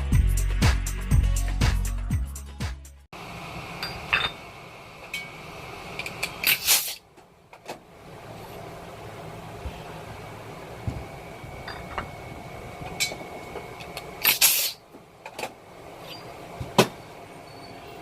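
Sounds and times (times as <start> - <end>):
steady background hum: 3.2 - 18.0
short loud hiss: 6.4 - 7.0, 14.2 - 14.8.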